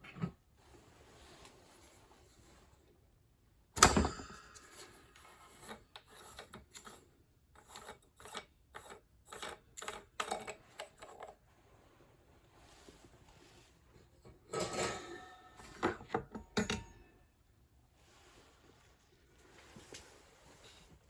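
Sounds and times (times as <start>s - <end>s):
table fan parts scraping and clicking: 4.6s - 11.5s, 14.2s - 17.0s.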